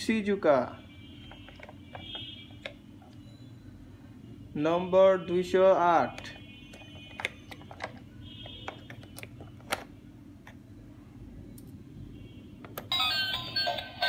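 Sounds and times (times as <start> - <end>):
low steady hum: 0.0 - 14.0
plastic toy clicks and taps: 6.2 - 8.0.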